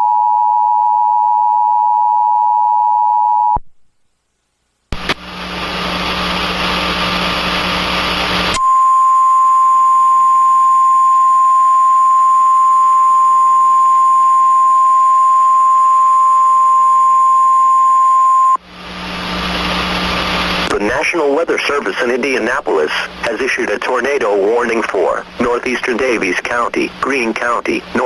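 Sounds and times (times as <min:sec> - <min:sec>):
radio hiss: 0:04.9 - 0:08.6, 0:18.8 - 0:28.0.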